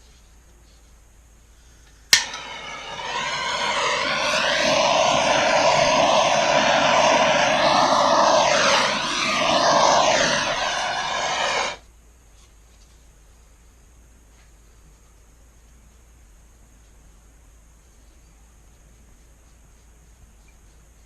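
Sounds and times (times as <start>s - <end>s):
electric air blower rushing: 2.2s - 11.8s.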